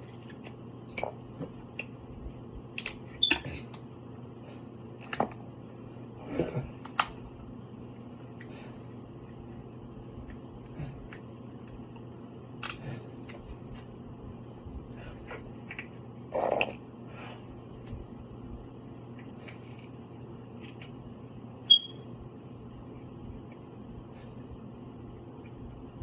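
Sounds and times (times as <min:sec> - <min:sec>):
shells cracking while eating: 0:00.0 - 0:03.5, 0:06.7 - 0:07.3, 0:10.2 - 0:14.0, 0:19.2 - 0:21.0.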